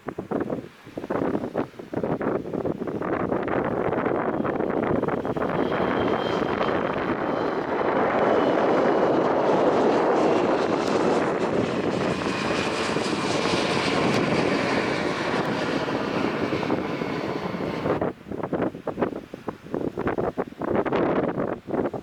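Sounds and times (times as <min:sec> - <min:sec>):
airliner engines roaring: 0:00.1 - 0:22.0
faint high whine: 0:03.8 - 0:18.1.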